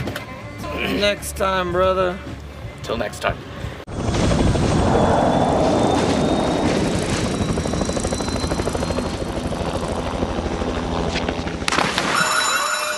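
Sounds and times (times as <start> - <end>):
helicopter rotor blades chopping: 3.9 - 12.1
high turbine whine: 3.9 - 12.9.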